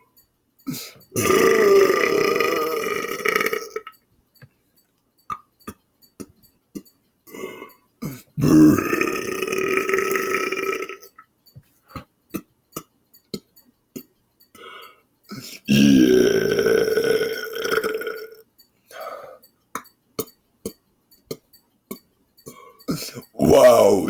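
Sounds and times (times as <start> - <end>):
man burping: 0.7 - 3.9, 7.3 - 11.1, 15.3 - 18.4, 22.9 - 24.0.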